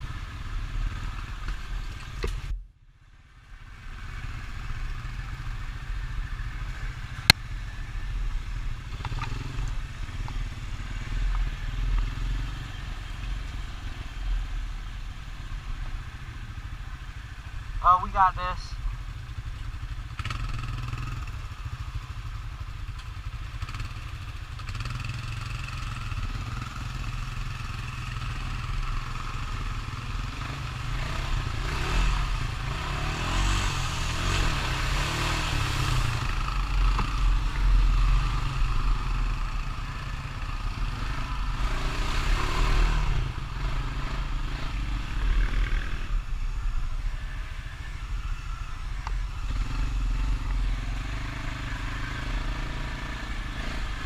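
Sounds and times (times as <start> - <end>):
atv engine revving in mud: 20.0 - 21.6, 23.5 - 46.2, 49.3 - 54.0.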